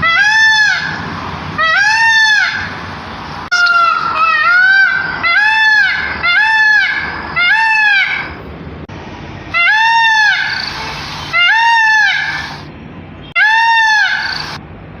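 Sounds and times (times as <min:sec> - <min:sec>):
peafowl wailing calls: 0:00.0 - 0:01.0, 0:01.6 - 0:02.8, 0:03.5 - 0:08.4, 0:09.5 - 0:12.7, 0:13.4 - 0:14.6.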